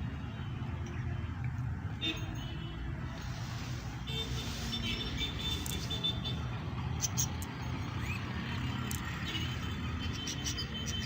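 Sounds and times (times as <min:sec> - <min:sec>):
cage birds twittering: 0:04.3 - 0:11.0.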